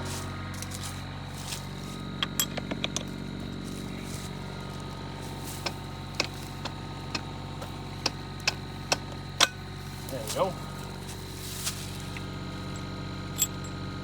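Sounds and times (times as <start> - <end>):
excavator engine idling: 0.0 - 14.0
light metal clinks: 12.1 - 13.9.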